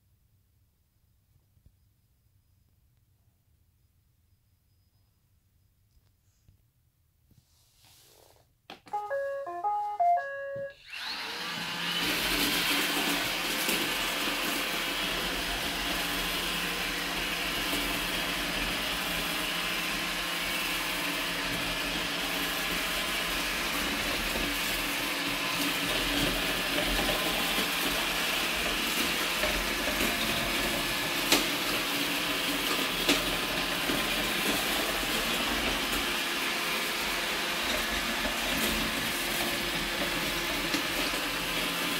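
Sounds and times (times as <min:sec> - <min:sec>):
robot vacuum electronic tune: 0:08.9 - 0:11.5
vacuum brushes and motor running: 0:10.8 - 0:41.9.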